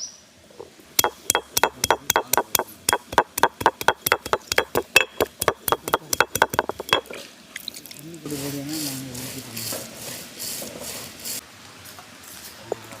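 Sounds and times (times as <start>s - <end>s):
knife chopping on cutting board: 1.0s - 7.1s.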